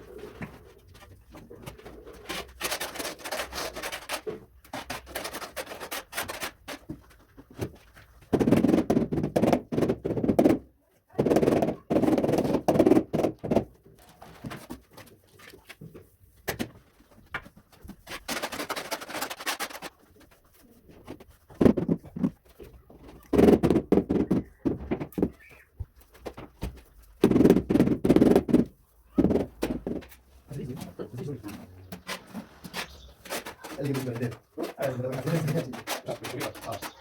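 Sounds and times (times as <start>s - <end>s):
pigeon cooing: 0.0s - 3.2s, 30.6s - 37.0s.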